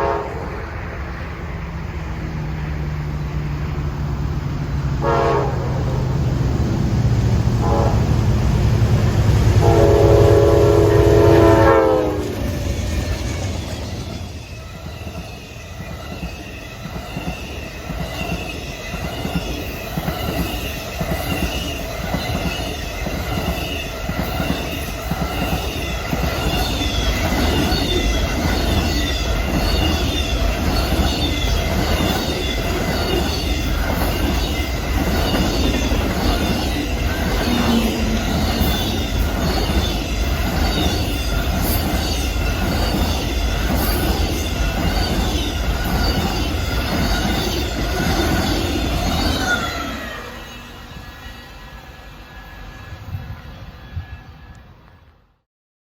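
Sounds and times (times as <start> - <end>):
heavy train rumble: 0.0 - 55.2
train wheels clicking over rail joints: 12.1 - 50.0
high wheel squeal: 12.2 - 54.6.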